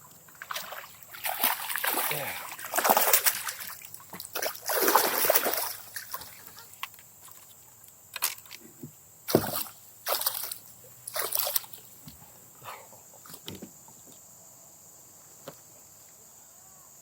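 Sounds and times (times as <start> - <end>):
water splashing: 0.3 - 7.4, 9.3 - 12.0.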